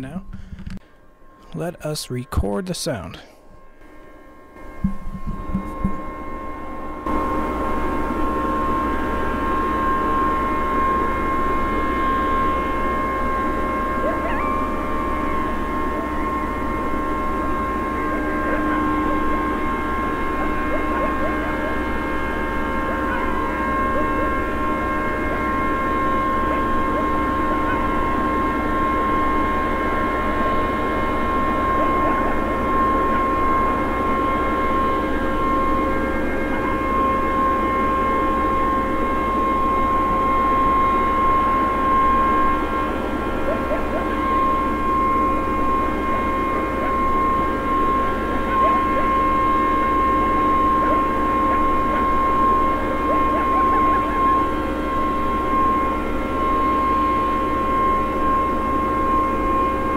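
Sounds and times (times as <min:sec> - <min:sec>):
droning hum over hiss: 0:00.0 - 0:59.9.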